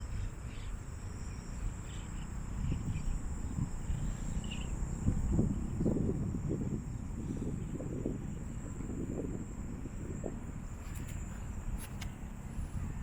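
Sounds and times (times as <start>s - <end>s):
crickets chirping: 0.0s - 13.0s
wind buffeting microphone: 0.0s - 13.0s.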